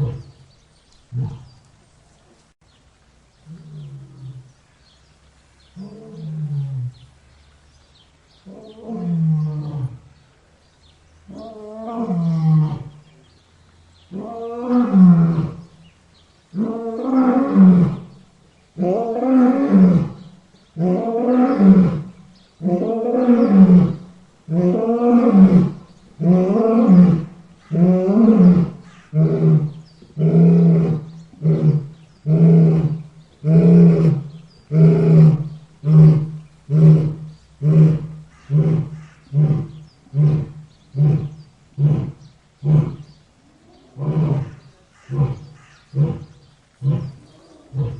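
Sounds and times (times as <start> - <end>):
lion roaring: 1.1 - 1.6, 20.8 - 47.9.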